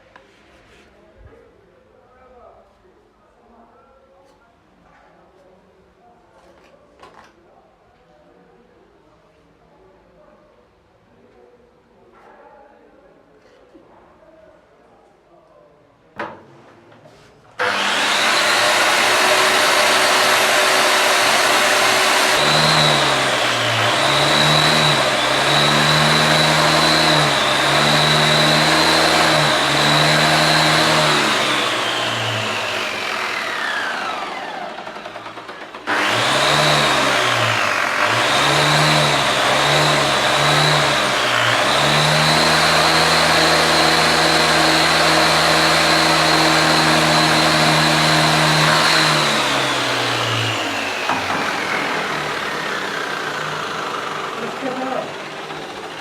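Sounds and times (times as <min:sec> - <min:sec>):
electric power tool whining: 0:17.6 - 0:56.0.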